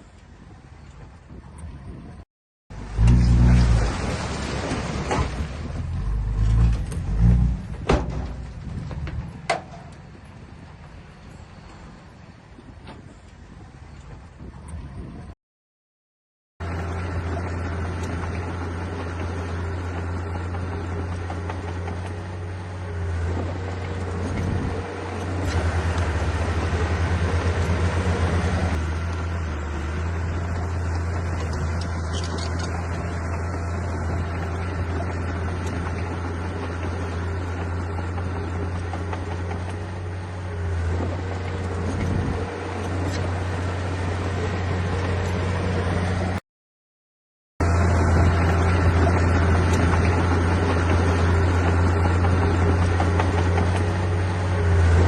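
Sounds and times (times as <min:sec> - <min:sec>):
heavy diesel engine running: 0:16.6 - 0:46.4, 0:47.6 - 0:55.0.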